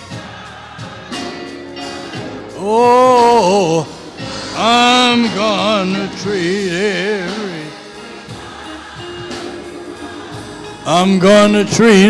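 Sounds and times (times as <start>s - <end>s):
gospel singing with vibrato: 0.0s - 12.0s
soft musical accompaniment: 0.0s - 12.0s.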